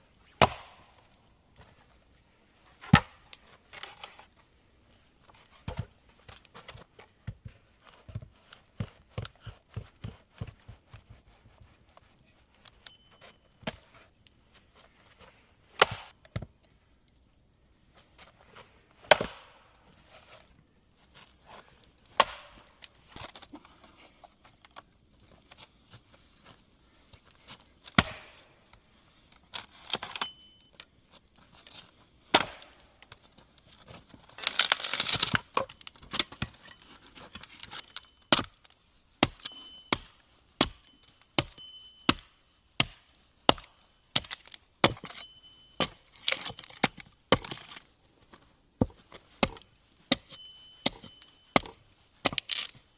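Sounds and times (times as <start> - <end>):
wood being chopped: 0.4 - 1.2, 2.8 - 3.2, 15.8 - 16.1, 19.0 - 19.6, 22.1 - 22.7, 28.0 - 28.4, 32.3 - 32.8, 34.4 - 36.6, 37.4 - 38.6, 39.2 - 47.8, 48.8 - 52.8.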